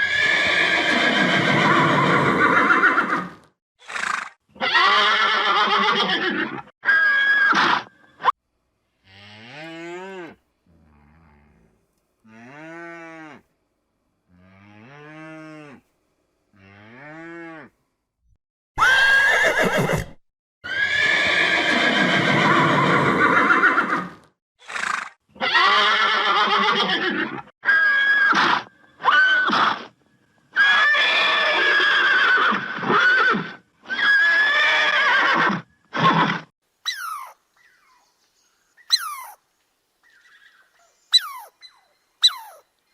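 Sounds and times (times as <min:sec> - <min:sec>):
farm animal calls: 0:36.9 - 0:38.0, 0:38.8 - 0:39.4, 0:40.1 - 0:42.7.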